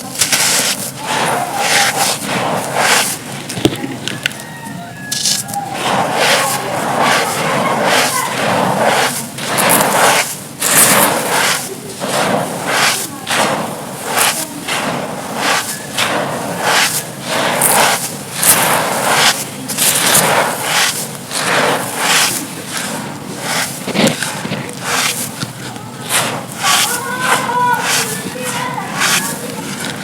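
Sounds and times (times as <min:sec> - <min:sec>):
dry material crunching: 0:00.0 - 0:30.0.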